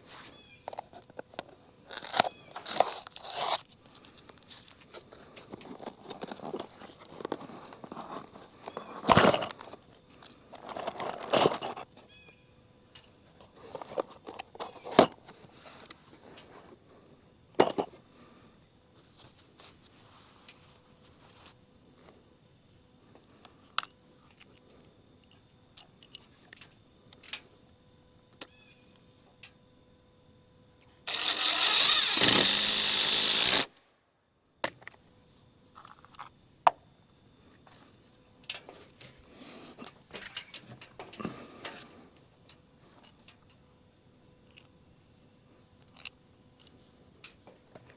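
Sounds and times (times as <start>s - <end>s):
loud power tool running: 31.1s - 33.7s.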